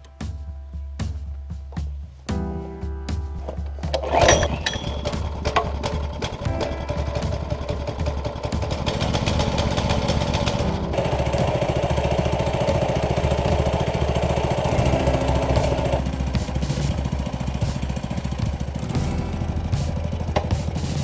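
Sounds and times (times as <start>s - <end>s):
small engine running: 8.1s - 18.9s.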